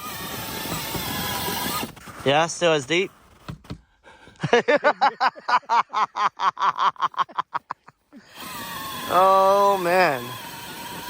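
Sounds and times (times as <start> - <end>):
person laughing: 4.4 - 8.4.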